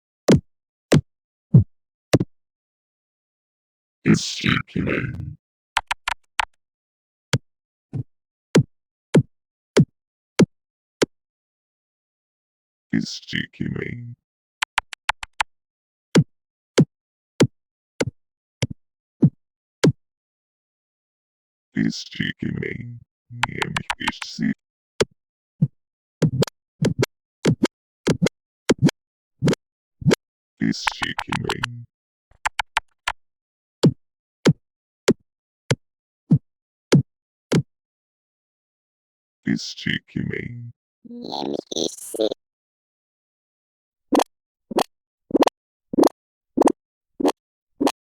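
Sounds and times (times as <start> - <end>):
quick sharp clicks: 14.6 - 15.5, 23.4 - 24.3, 30.8 - 31.7, 32.3 - 33.1.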